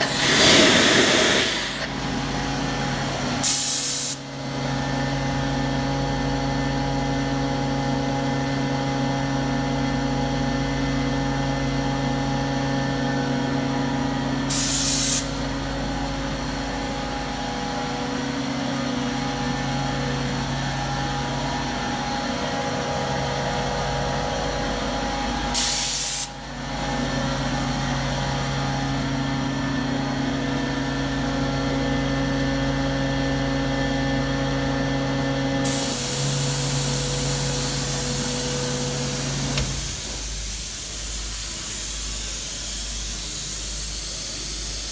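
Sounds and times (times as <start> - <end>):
burst of hissing air: 0.0 - 2.3, 3.4 - 4.3, 14.5 - 15.4, 25.6 - 26.3, 35.6 - 44.9
air compressor humming: 0.0 - 4.4, 35.6 - 44.9.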